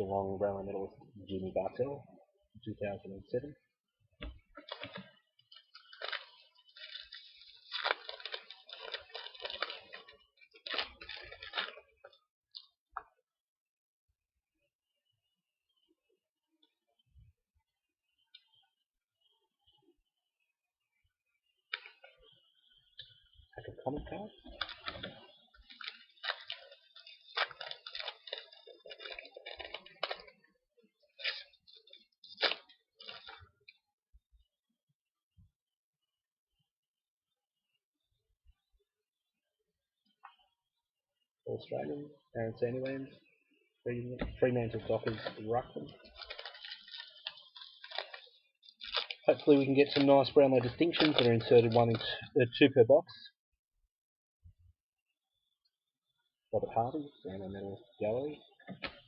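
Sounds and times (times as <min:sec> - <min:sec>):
cards rustling: 0:04.6 - 0:12.7, 0:24.5 - 0:30.4, 0:31.1 - 0:33.5, 0:45.0 - 0:52.2
foil wrapper crinkling and tearing: 0:04.6 - 0:12.8, 0:24.4 - 0:33.8, 0:44.8 - 0:52.3, 0:58.5 - 0:59.0.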